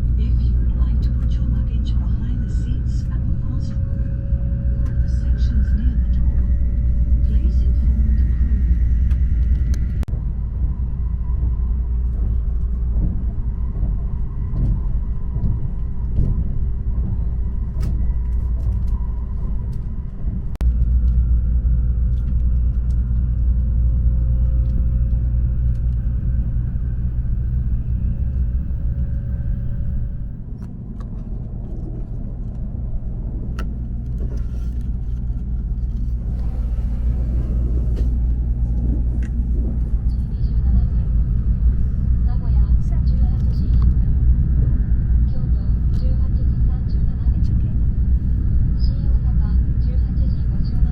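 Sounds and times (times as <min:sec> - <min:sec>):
faint whining tones: 0:00.0 - 0:50.9
train cabin low rumble: 0:00.0 - 0:50.9.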